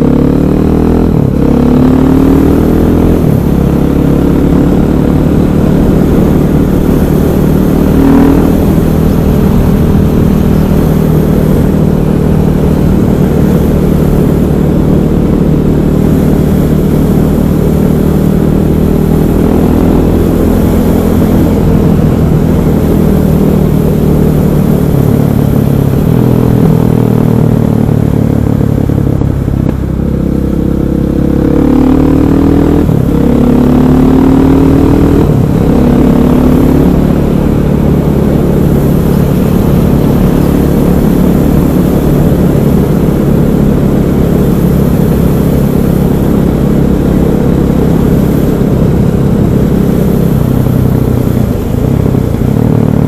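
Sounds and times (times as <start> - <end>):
motorcycle engine accelerating: 0.0 - 53.0.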